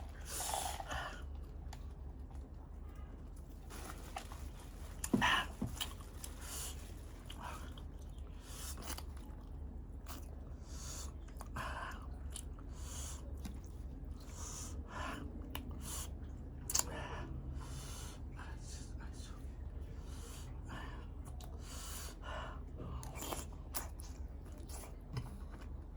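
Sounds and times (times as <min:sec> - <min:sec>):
wet chewing and biting: 0:05.0 - 0:10.5, 0:22.9 - 0:25.9.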